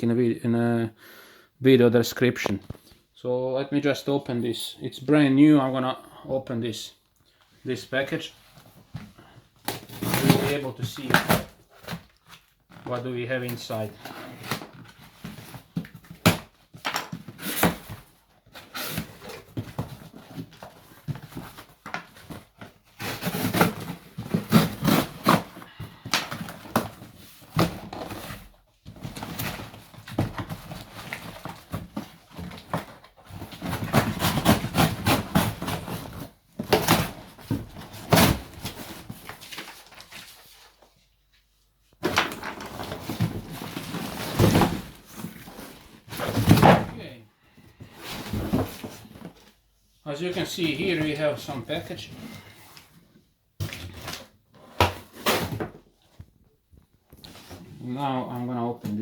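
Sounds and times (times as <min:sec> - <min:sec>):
cardboard box scraping and tearing: 0:09.7 - 0:11.2, 0:22.9 - 0:25.6.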